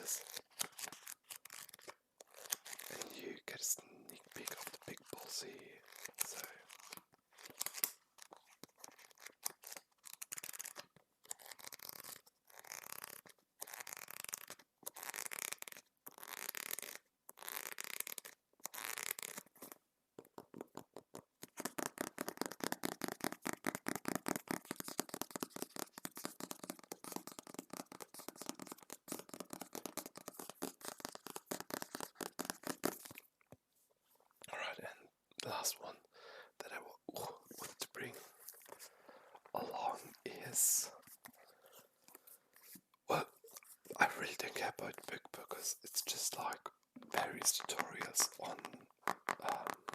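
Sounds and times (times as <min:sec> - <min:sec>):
scratching and rubbing on book: 0:00.0 - 0:03.2, 0:04.2 - 0:19.8, 0:21.4 - 0:33.2, 0:41.0 - 0:44.0.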